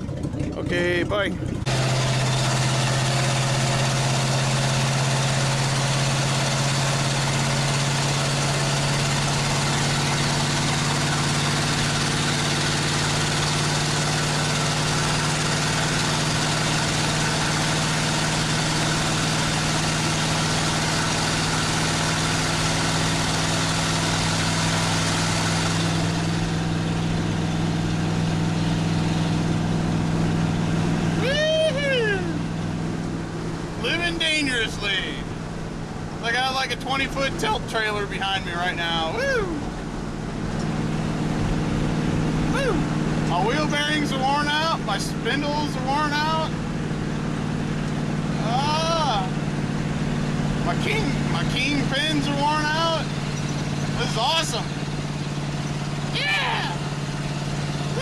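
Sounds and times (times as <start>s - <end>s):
pickup engine running: 0.0s - 58.0s.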